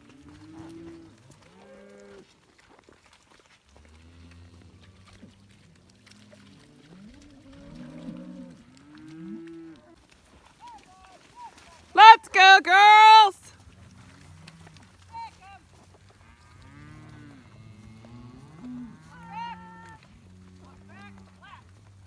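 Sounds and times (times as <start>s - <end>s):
cows mooing: 3.8s - 9.8s, 12.0s - 22.0s.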